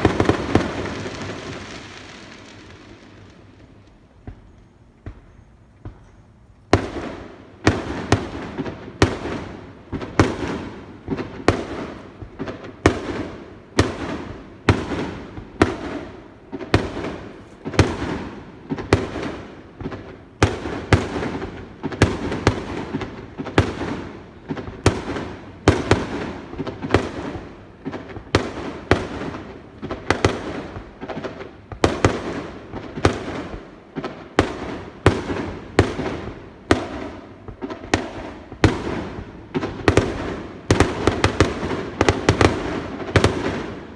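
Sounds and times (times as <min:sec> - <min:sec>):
crackling rumbling echo: 0:00.0 - 0:06.0
fireworks bursting with loud bangs: 0:00.0 - 0:43.9.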